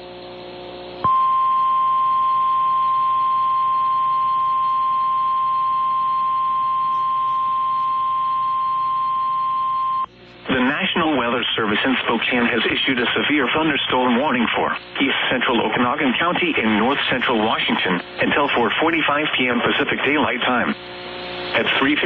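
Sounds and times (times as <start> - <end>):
radio static hiss: 0.0 - 22.0
steady high alarm tone: 1.0 - 10.1.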